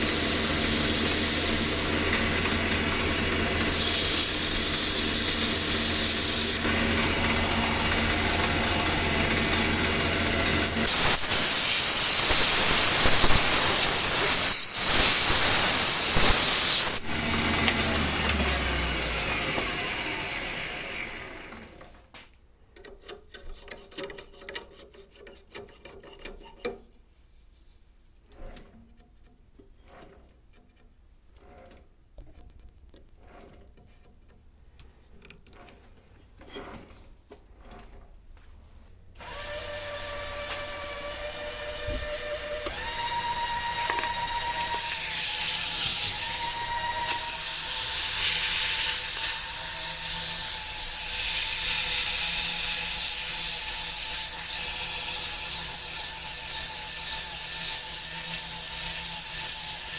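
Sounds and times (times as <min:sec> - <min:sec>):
power tool high-pitched hiss: 0:00.0 - 0:02.2, 0:03.6 - 0:21.1, 0:39.2 - 0:59.9
hand work clicks and rubbing: 0:21.9 - 0:38.5.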